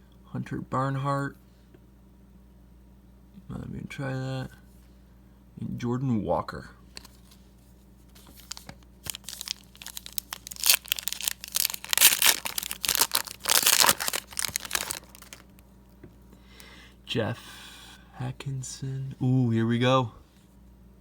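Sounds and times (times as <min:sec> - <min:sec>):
foil wrapper tearing and crinkling: 0:08.2 - 0:15.6.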